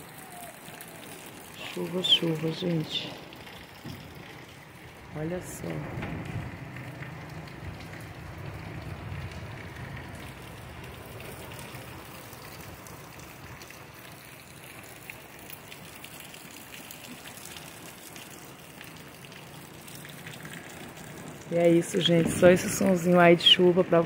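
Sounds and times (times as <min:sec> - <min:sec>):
heavy rain: 0:00.0 - 0:24.0
low rumble: 0:05.0 - 0:10.9.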